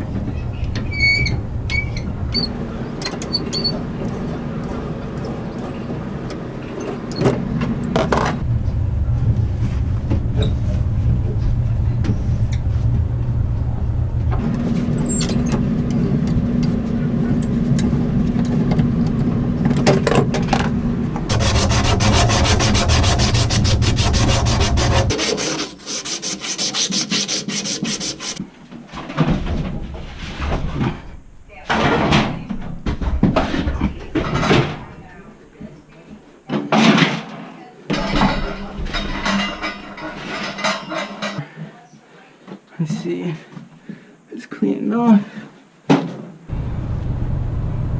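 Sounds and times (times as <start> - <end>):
power tool sanding: 2.4 - 8.4, 14.4 - 21.8.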